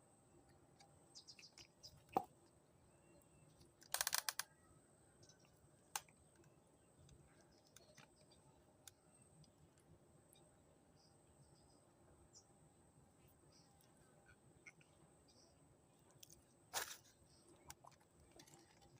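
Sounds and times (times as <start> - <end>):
faint bird chirps: 1.0 - 3.6, 4.3 - 5.6, 10.2 - 16.0.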